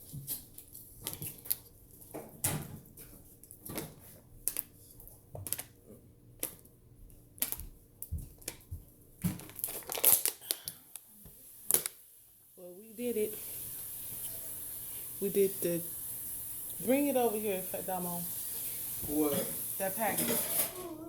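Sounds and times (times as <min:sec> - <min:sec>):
crinkling and rustling: 0:00.0 - 0:11.0.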